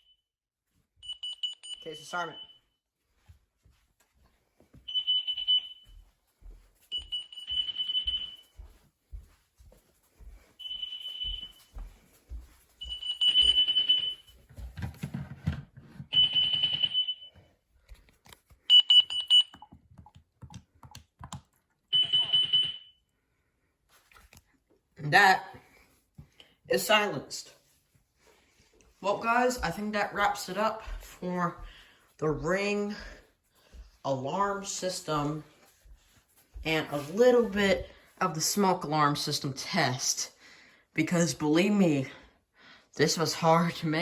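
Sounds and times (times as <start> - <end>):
alarm beeping: 1.0 - 2.6, 4.9 - 6.0, 6.9 - 8.5, 10.6 - 11.7, 12.8 - 14.4, 18.7 - 19.7, 21.9 - 23.0.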